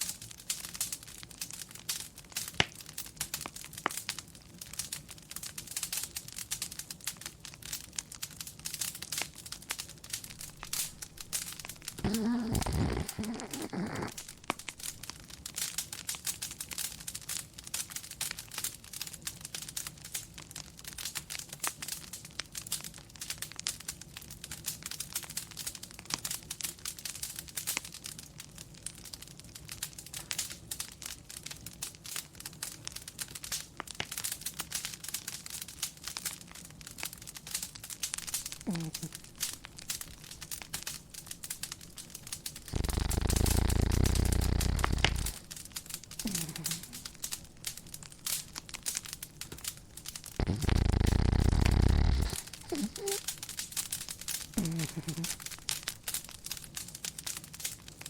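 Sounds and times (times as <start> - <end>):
wood fire crackling: 0.0 - 58.0
dog snoring: 10.4 - 15.0, 38.2 - 40.0, 42.5 - 45.6, 46.2 - 47.2, 50.4 - 53.4, 54.6 - 55.6.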